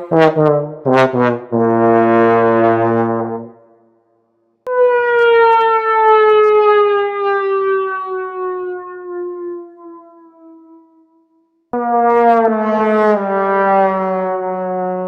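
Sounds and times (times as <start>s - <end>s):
sad trombone slide: 0.0s - 3.5s
held brass note: 0.0s - 3.6s.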